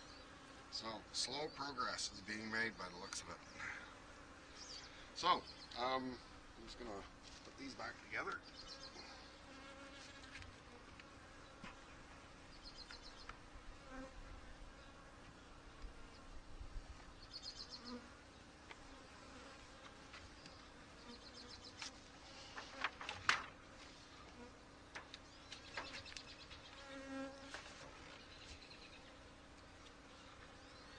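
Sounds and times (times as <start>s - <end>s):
honey bees buzzing: 0.0s - 30.9s
knocks of wooden hive parts: 21.8s - 23.6s, 24.9s - 26.2s.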